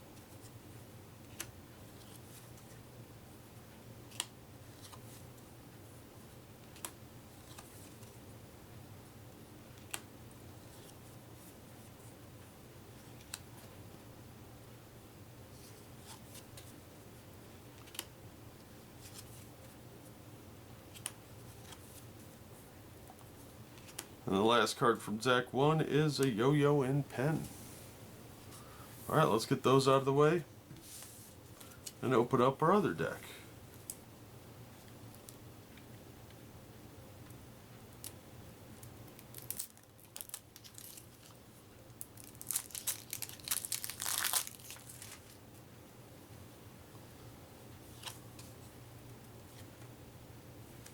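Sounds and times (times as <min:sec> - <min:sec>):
card wrapper tearing and crinkling: 0:39.2 - 0:41.4, 0:42.0 - 0:45.4.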